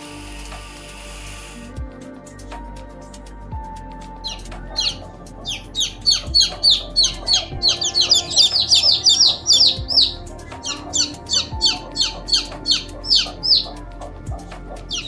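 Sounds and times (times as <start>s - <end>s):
background music with steady beat: 0.0s - 15.0s
bird chirping: 4.2s - 15.0s.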